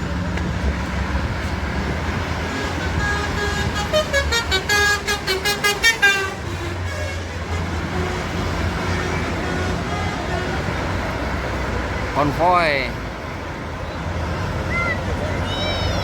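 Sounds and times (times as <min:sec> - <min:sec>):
low rumble of traffic: 0:00.0 - 0:16.0
bus horn tooting a tune: 0:02.3 - 0:11.2.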